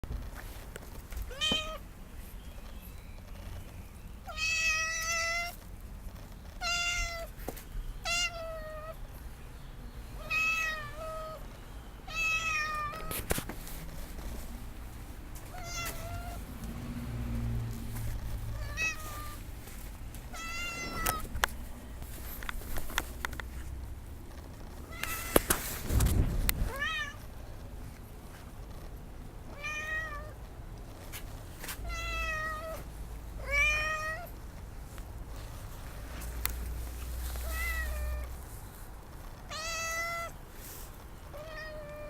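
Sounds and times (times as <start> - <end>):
cat meowing: 1.3 - 1.8, 4.2 - 5.6, 6.6 - 7.3, 8.0 - 9.0, 10.2 - 11.4, 12.1 - 13.1, 15.5 - 16.4, 18.5 - 19.4, 20.3 - 21.3, 26.7 - 27.2, 29.5 - 30.4, 31.8 - 32.8, 33.4 - 34.3, 37.4 - 38.3, 39.5 - 40.4, 41.3 - 42.0.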